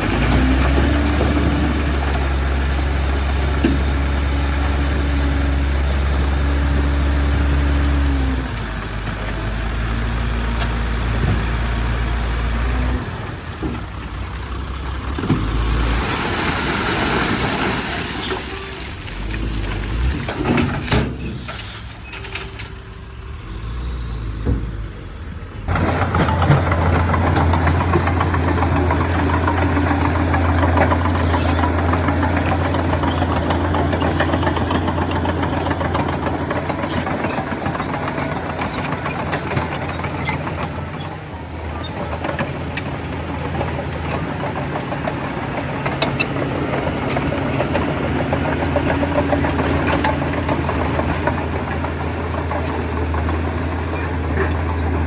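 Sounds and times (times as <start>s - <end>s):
diesel machinery engines: 0.0s - 55.0s
clanks and knocks: 19.3s - 22.9s, 25.7s - 55.0s.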